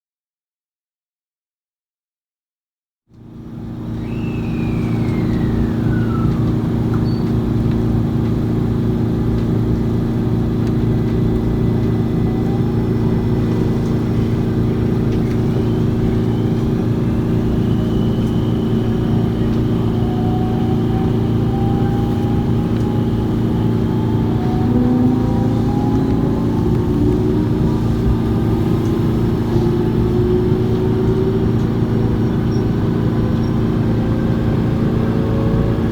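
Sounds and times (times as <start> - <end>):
faint whines: 4.0 - 7.5, 11.0 - 35.9
air compressor droning: 10.0 - 35.9.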